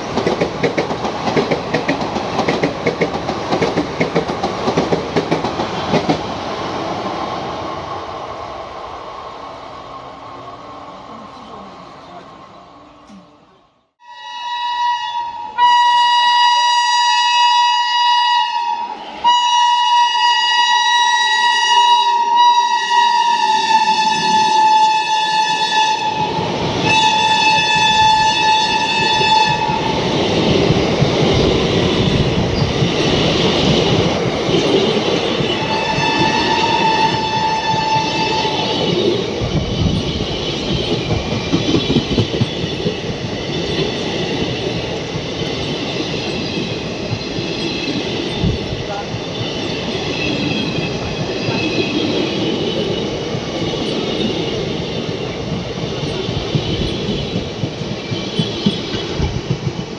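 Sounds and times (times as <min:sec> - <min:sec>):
train rumbling past: 0:00.0 - 0:59.9
locomotive horn blasts: 0:14.0 - 0:26.3, 0:26.9 - 0:29.9, 0:35.6 - 0:38.6.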